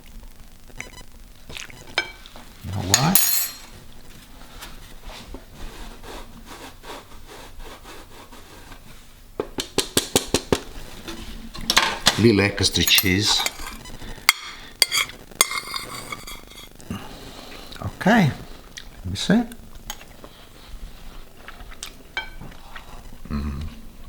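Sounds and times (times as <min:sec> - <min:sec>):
kitchen handling noises: 0:02.7 - 0:03.7, 0:09.5 - 0:16.6.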